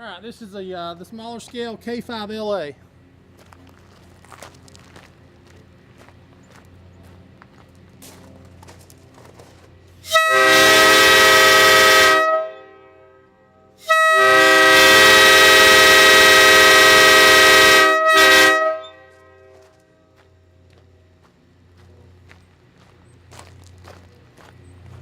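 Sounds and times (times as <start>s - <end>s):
air horn blasts: 10.0s - 19.9s.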